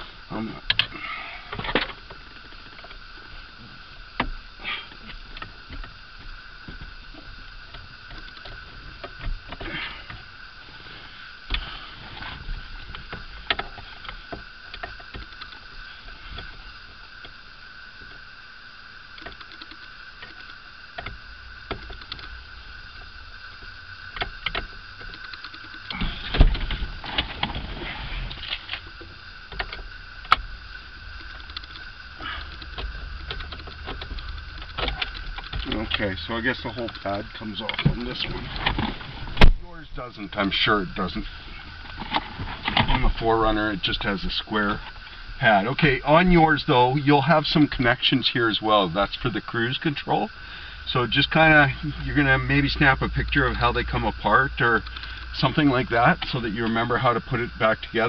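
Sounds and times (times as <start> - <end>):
faint high hum: 0.0 - 58.0.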